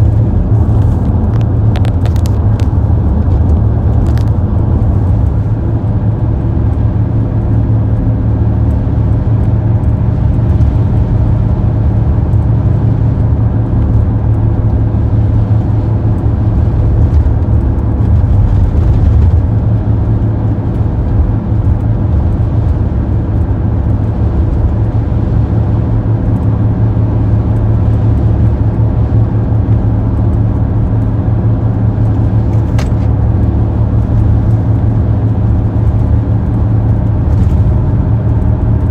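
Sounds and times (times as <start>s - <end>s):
car engine and road noise: 0.0s - 38.9s.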